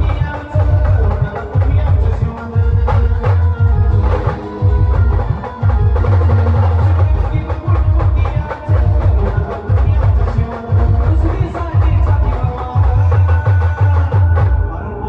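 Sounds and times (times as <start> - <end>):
fast heavy drum beat: 0.0 - 14.7
horns playing melody: 3.7 - 7.6.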